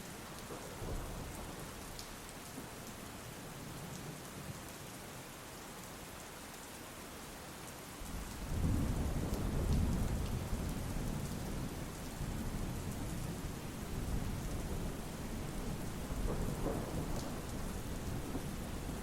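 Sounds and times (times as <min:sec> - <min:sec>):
steady rain: 0:00.0 - 0:19.0
thunder rumbling: 0:08.4 - 0:11.8, 0:12.4 - 0:19.0.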